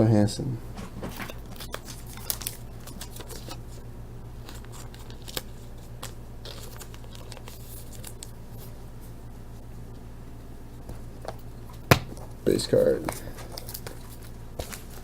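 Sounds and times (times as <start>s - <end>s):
steady low hum: 0.0s - 15.0s
cards rustling and clicking: 0.9s - 3.8s, 4.4s - 8.8s, 11.2s - 15.0s.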